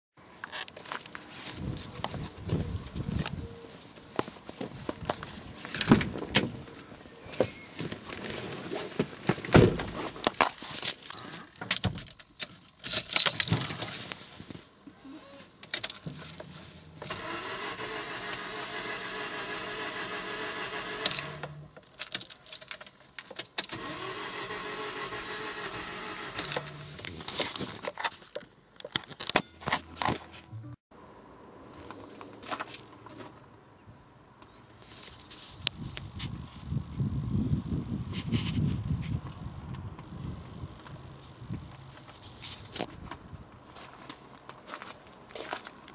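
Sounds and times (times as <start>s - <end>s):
keys jangling and clicking: 12.0s - 13.5s, 21.1s - 23.6s
car starter cranking engine: 17.0s - 21.7s, 23.6s - 26.9s.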